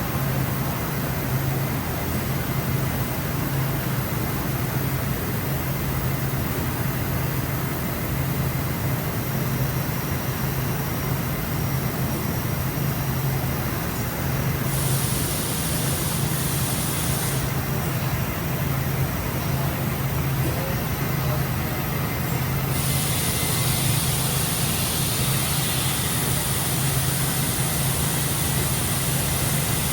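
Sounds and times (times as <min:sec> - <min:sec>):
machine low hum: 0:14.6 - 0:29.9
hiss: 0:14.7 - 0:17.8, 0:22.7 - 0:29.9.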